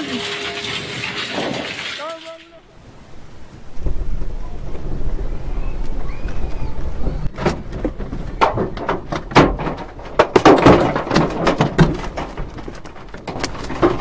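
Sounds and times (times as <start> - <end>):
objects knocking and clattering: 0.0 - 2.6, 7.3 - 14.0
low earthquake rumble: 2.6 - 14.0.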